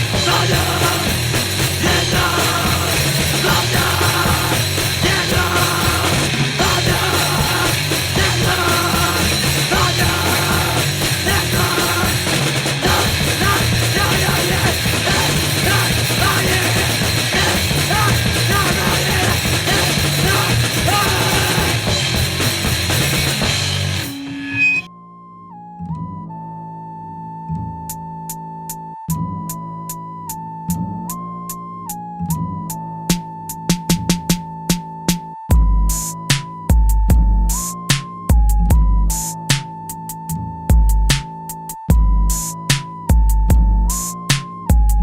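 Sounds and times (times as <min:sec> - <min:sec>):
wall of distorted noise: 0:00.0 - 0:24.9.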